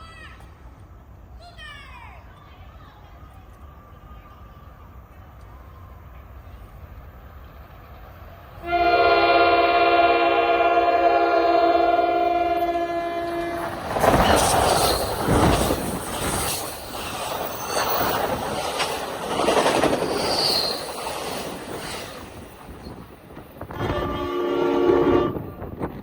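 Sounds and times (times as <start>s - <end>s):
rush of passing train: 0.0s - 26.0s
train horn chord: 8.6s - 13.6s, 23.8s - 25.6s
train wheels clattering over rail joints: 13.4s - 24.0s.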